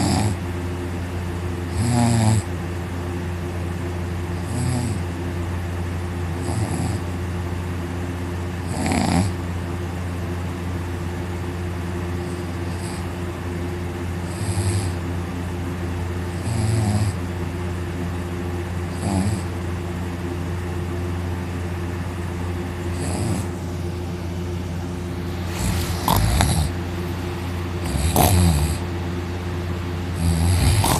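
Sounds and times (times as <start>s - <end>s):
man snoring loudly: 0.0s - 0.4s, 1.7s - 2.5s, 4.4s - 5.1s, 6.4s - 7.1s, 8.6s - 9.4s, 12.6s - 13.0s, 14.2s - 15.0s, 16.4s - 17.2s, 18.9s - 19.5s, 22.9s - 23.5s, 25.4s - 26.8s, 27.8s - 28.9s, 30.1s - 30.9s.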